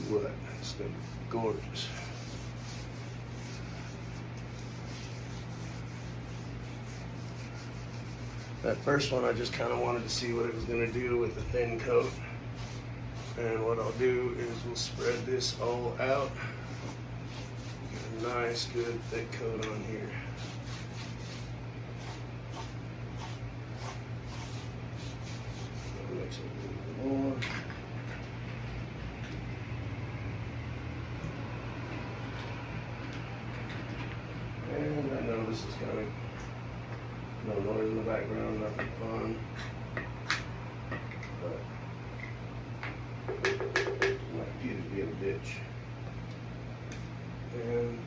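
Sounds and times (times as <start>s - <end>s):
applicator rubbing on wood: 0.0s - 26.1s
low electrical hum: 0.0s - 48.0s.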